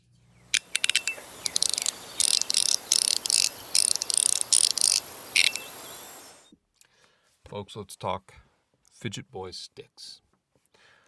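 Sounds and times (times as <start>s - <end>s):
magnetic fidget slider clicking: 0.5s - 6.4s.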